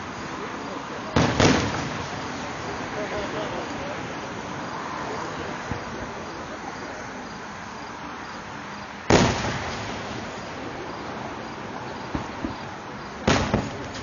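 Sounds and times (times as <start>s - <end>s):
steady outdoor hiss: 0.0s - 14.0s
faint firework pops: 1.2s - 2.2s, 9.1s - 10.4s, 12.1s - 12.6s, 13.2s - 14.0s
firework shell boom: 1.2s - 2.2s, 9.1s - 10.4s, 13.3s - 14.0s.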